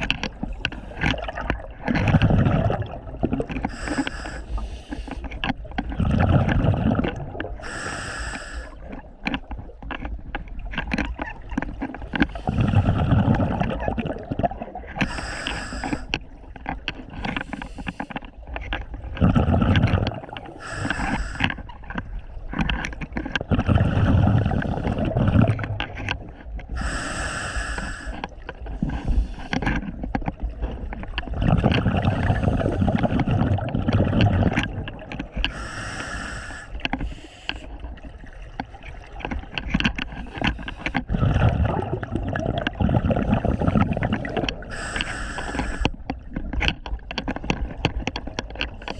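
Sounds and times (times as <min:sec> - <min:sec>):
bubbling exhalations underwater: 0:01.1 - 0:04.4, 0:05.8 - 0:07.9, 0:12.4 - 0:16.1, 0:19.1 - 0:21.4, 0:23.4 - 0:25.9, 0:31.2 - 0:36.6, 0:41.0 - 0:45.8
hissing regulator inhalations: 0:03.6 - 0:05.3, 0:07.6 - 0:08.8, 0:15.0 - 0:16.1, 0:17.3 - 0:18.2, 0:20.5 - 0:21.6, 0:26.8 - 0:28.2, 0:35.5 - 0:37.7, 0:43.5 - 0:46.0.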